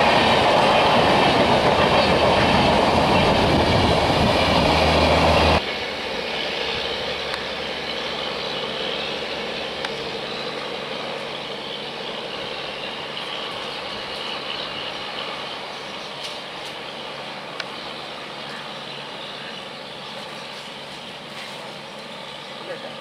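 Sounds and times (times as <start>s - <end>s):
distant train rumble: 0.0s - 23.0s
train running noise: 0.0s - 23.0s.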